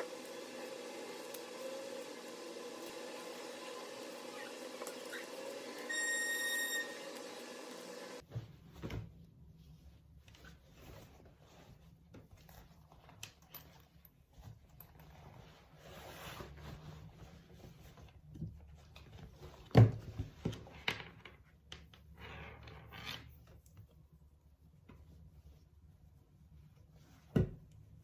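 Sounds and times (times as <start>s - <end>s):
rustling of objects being handled: 8.2s - 22.2s.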